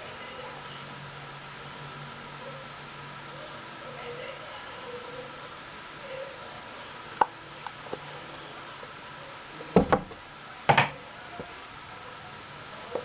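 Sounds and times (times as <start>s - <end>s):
hard objects knocking and clattering: 9.8s - 11.0s.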